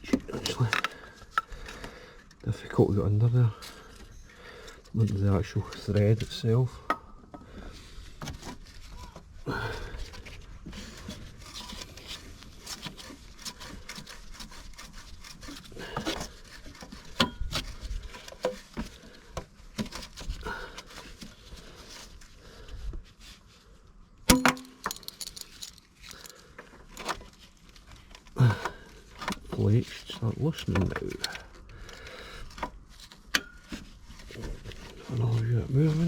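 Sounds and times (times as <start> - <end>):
metal clicks and scrapes: 24.3 - 27.3.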